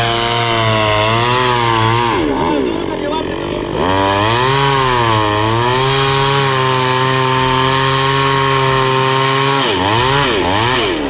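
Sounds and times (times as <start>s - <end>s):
chainsaw engine at high revs: 0.0s - 11.0s.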